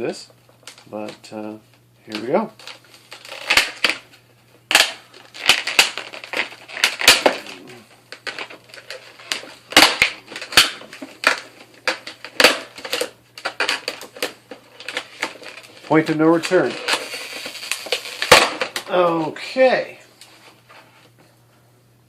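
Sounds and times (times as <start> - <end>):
packaging crinkling and clicking: 0.5 - 1.2, 2.1 - 19.0.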